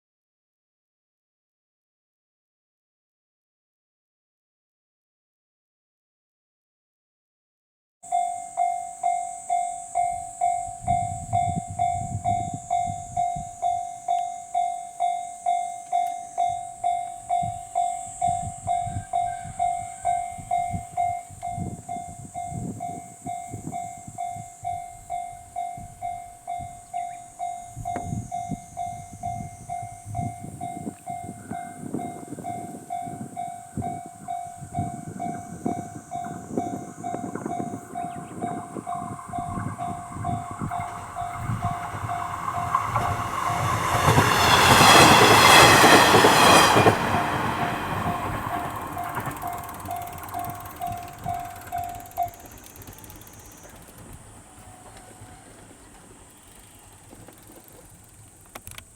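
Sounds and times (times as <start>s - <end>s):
level crossing warning bell ringing: 8.0s - 57.0s
steady high-pitched hiss: 8.1s - 58.9s
diesel train rumbling and clattering: 25.0s - 58.9s.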